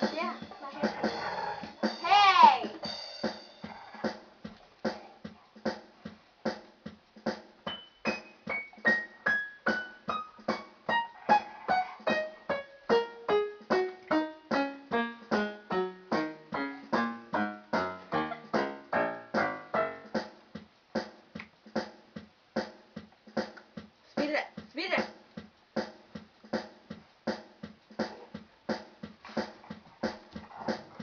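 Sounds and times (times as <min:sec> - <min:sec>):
electronic keyboard notes: 0:11.7 - 0:20.2.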